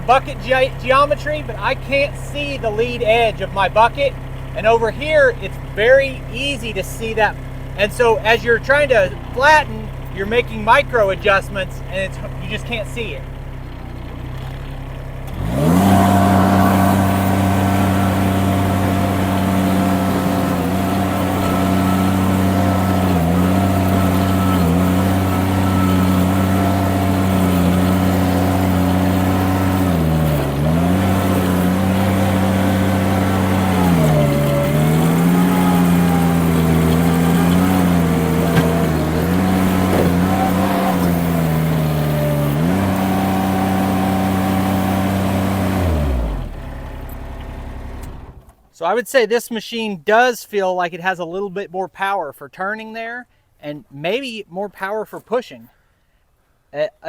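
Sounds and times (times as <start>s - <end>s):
skid steer diesel engine revving: 0.0s - 48.6s.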